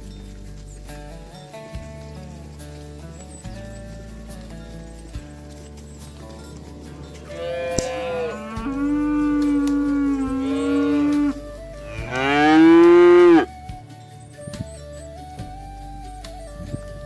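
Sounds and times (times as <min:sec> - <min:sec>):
cattle mooing: 0:06.8 - 0:13.5.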